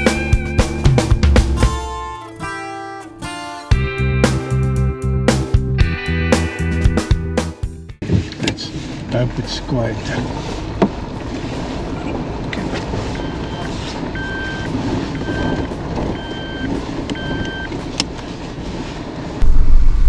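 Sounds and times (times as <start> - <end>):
vehicle on dirt road: 8.0 - 20.0
electronic beep: 13.2 - 17.7
loud low rumble: 19.4 - 20.0.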